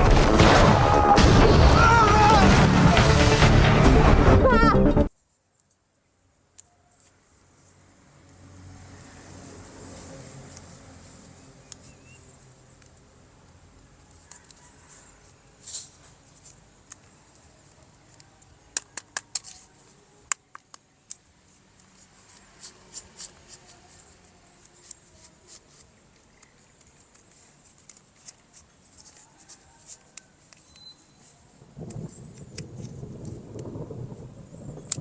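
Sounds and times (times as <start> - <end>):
plastic toy parts clicking: 16.4 - 33.4.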